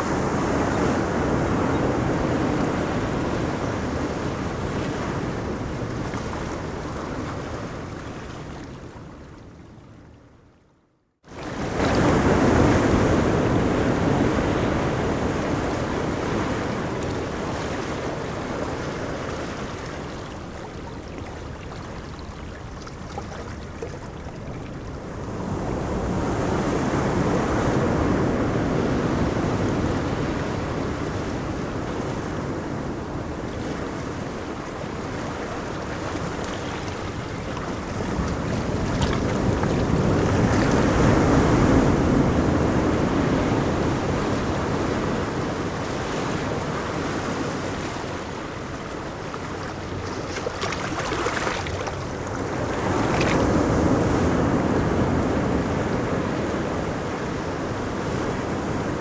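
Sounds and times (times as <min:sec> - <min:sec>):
ocean waves breaking on beach: 0:00.0 - 0:10.0, 0:11.3 - 0:59.0.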